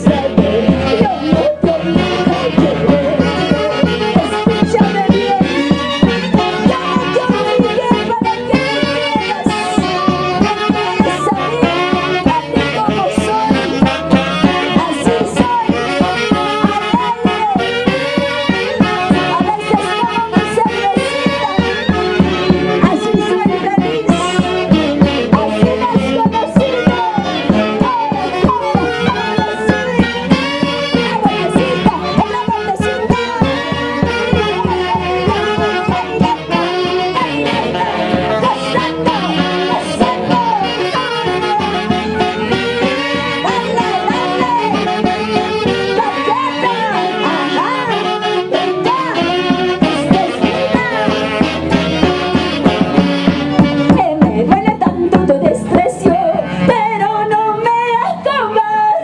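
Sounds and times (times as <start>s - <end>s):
steady percussion beat: 0.0s - 46.1s
live band music: 0.0s - 59.0s
person singing: 0.0s - 59.0s
violin and saxophone melody: 0.0s - 59.0s.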